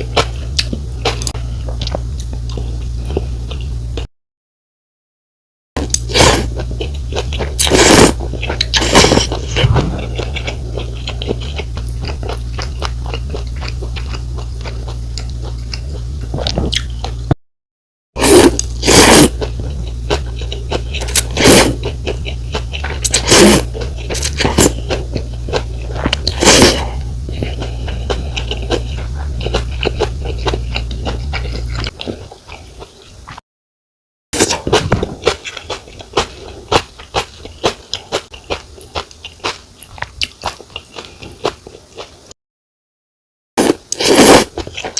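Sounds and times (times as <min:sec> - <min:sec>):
steady low hum: 0:00.0 - 0:04.1, 0:05.8 - 0:17.4, 0:18.2 - 0:33.3
wet chewing: 0:05.9 - 0:17.2, 0:18.4 - 0:33.2
slurping noodles: 0:07.5 - 0:16.8, 0:18.2 - 0:32.7, 0:43.6 - 0:44.9.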